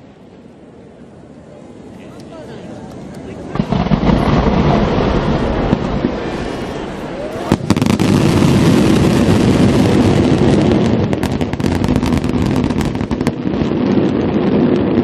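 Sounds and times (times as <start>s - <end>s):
fireworks crackling: 2.0s - 15.0s
fireworks booming: 3.4s - 15.0s.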